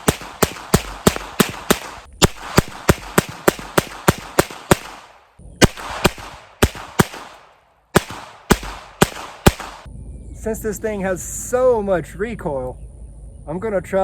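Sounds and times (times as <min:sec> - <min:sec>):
rapid revolver gunshots: 0:00.0 - 0:09.9.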